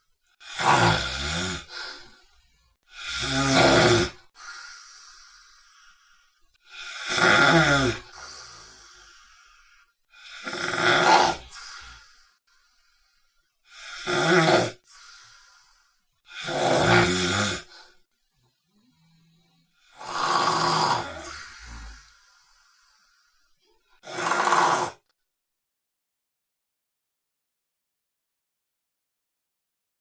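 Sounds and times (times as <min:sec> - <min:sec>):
dog snoring: 0:00.4 - 0:02.1, 0:02.9 - 0:05.4, 0:06.7 - 0:09.4, 0:10.2 - 0:12.1, 0:13.7 - 0:15.2, 0:16.4 - 0:18.0, 0:19.0 - 0:23.0, 0:24.0 - 0:25.0.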